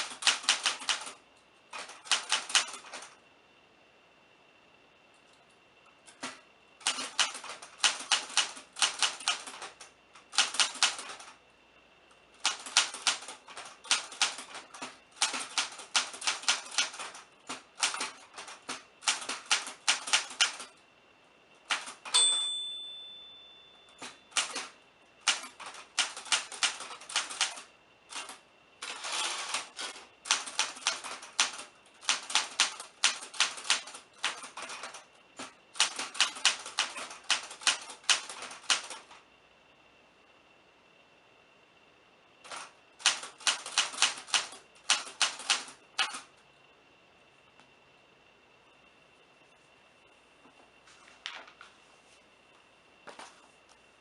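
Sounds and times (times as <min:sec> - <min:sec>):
typewriter margin bell: 0:22.0 - 0:24.7.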